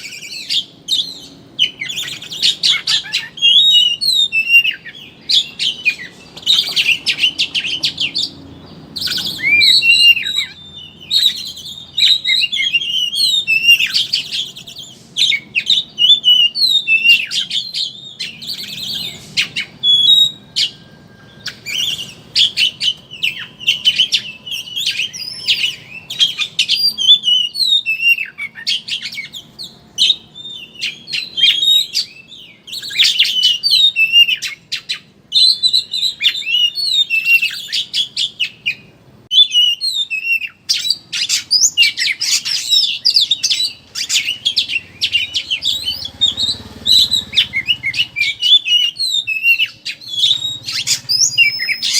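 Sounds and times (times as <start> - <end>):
bird singing chattering twitter: 0.0 - 51.9.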